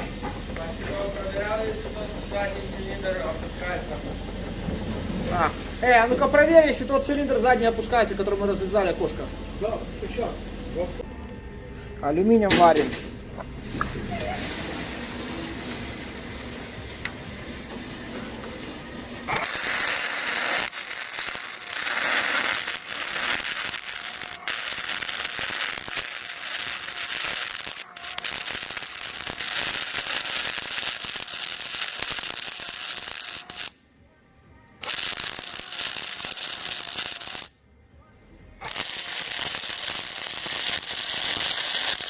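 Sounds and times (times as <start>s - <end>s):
welding arc hissing and crackling: 19.3s - 33.8s, 34.8s - 37.5s, 38.6s - 42.0s.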